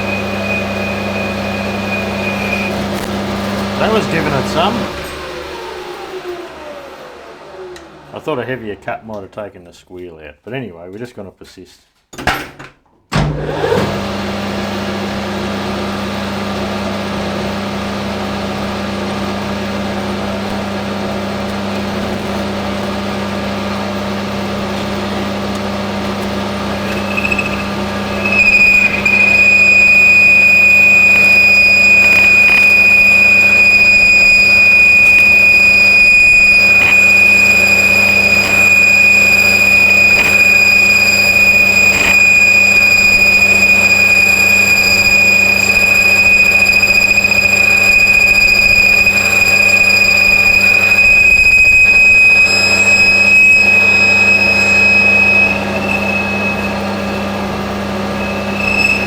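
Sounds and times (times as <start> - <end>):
cutting tool squealing: 0.0 - 6.8, 26.2 - 59.0
metal lathe humming: 0.0 - 9.0, 13.4 - 59.0.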